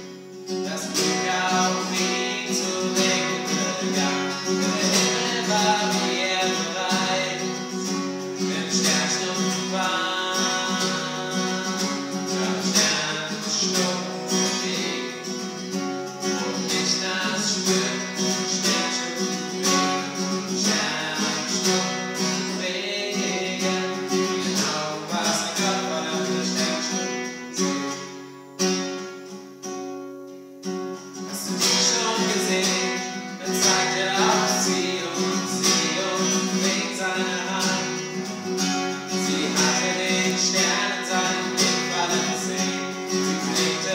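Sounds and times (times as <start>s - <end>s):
acoustic guitar strumming: 0.0s - 43.9s
person singing: 0.6s - 27.9s, 31.2s - 43.9s.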